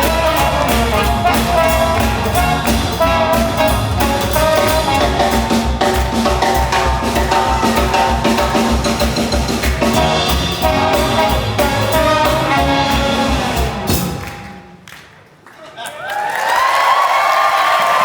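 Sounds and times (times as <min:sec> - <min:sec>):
trumpets and trombones: 0:00.0 - 0:09.0, 0:09.9 - 0:14.6
drum kit beat: 0:00.0 - 0:14.8
swing jazz band playing: 0:00.0 - 0:14.8.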